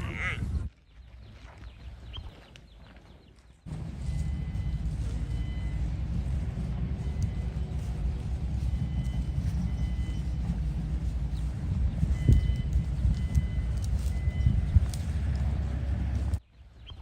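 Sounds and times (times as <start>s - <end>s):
loud low rumble: 3.7s - 16.4s.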